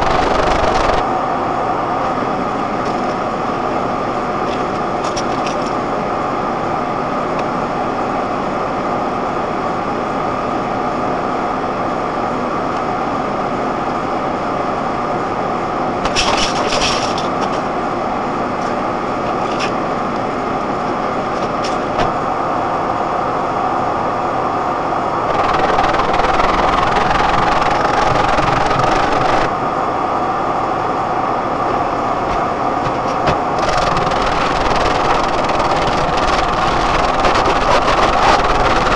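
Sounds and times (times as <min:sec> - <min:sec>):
rush of noise: 0:00.0 - 0:04.3, 0:21.9 - 0:38.9.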